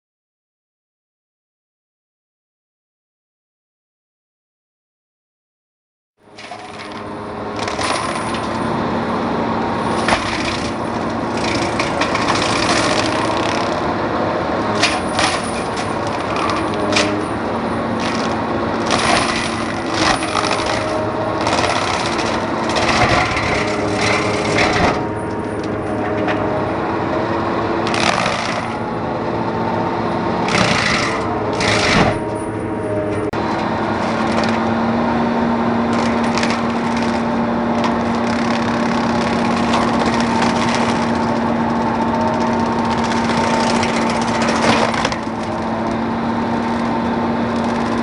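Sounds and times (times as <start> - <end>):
engine and hydraulics hum: 6.2 - 48.0
wood cracking and splintering: 6.4 - 8.8, 9.8 - 26.5, 27.8 - 28.9, 30.4 - 32.4, 33.9 - 34.8, 35.9 - 48.0.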